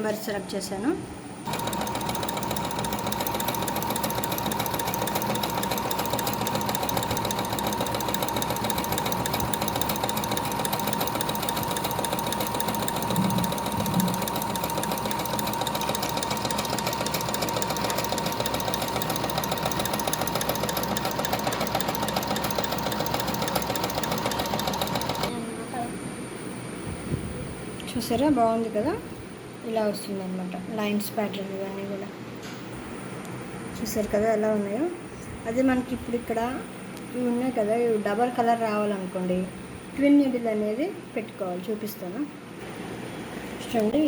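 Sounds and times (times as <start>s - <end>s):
sewing machine stitching: 1.5s - 25.3s.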